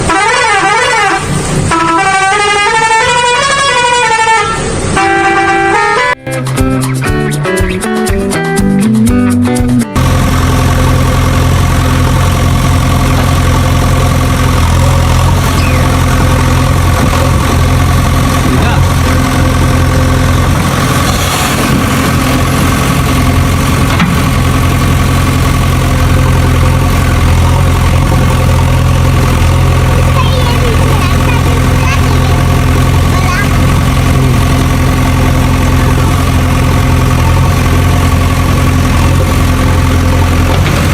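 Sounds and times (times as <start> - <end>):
musical vehicle horns: 0.0 - 6.6
engine idling: 5.0 - 40.9
music with a beat: 6.2 - 10.0.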